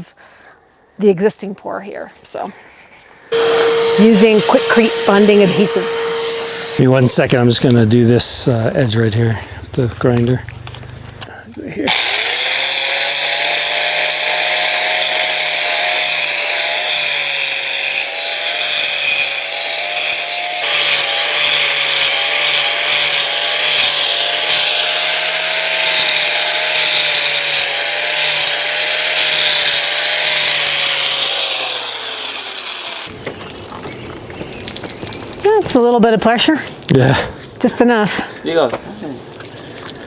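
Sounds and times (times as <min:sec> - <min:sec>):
angle grinder grinding concrete: 0:03.3 - 0:07.7, 0:11.9 - 0:33.2.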